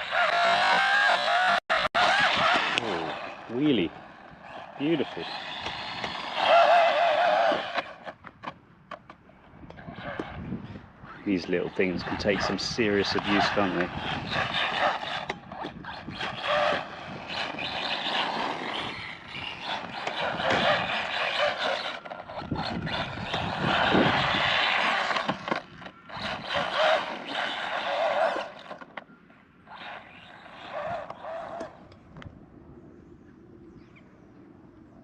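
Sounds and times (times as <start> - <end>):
electric motor whining: 0.0 - 8.2, 9.6 - 32.3
tyres scrabbling over ground: 12.6 - 29.1.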